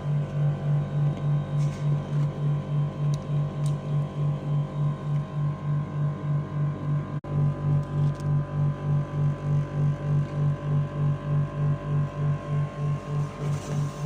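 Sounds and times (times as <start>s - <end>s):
low throbbing hum: 0.0s - 14.0s.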